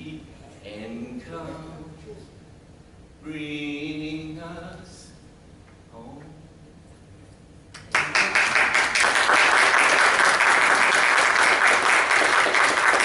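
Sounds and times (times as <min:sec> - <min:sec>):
crowd applauding: 0:07.8 - 0:13.0.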